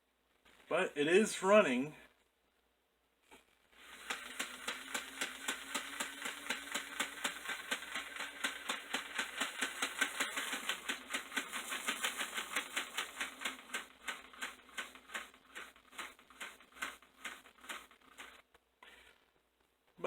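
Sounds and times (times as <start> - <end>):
model locomotive mechanism clicking: 3.8 - 18.5.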